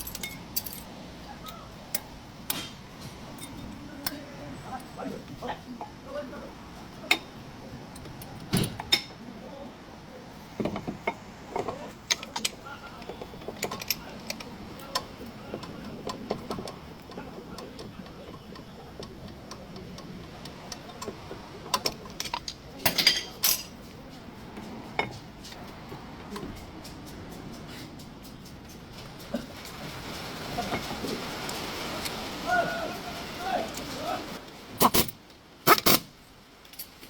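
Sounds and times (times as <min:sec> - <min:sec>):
metal tools clanking: 0:00.0 - 0:04.2, 0:10.8 - 0:19.1, 0:21.7 - 0:23.9.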